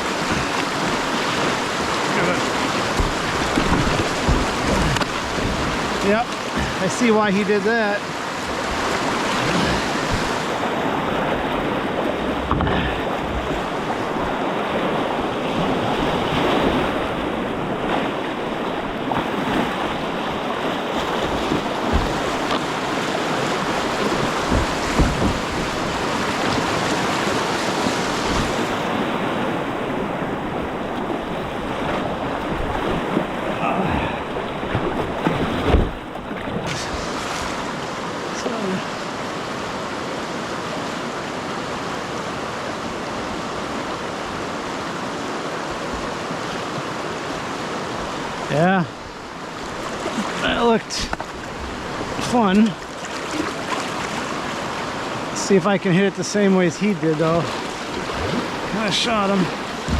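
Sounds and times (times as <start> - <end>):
whitewater rushing: 0.0 - 59.9
thumps on microphone: 21.2 - 22.7, 24.0 - 25.7, 59.5 - 59.9.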